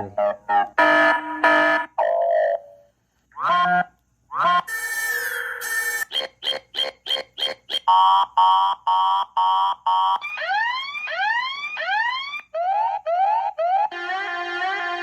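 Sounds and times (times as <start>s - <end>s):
steady alarm tone: 3.4s - 12.4s
rising siren whoops: 9.9s - 15.0s.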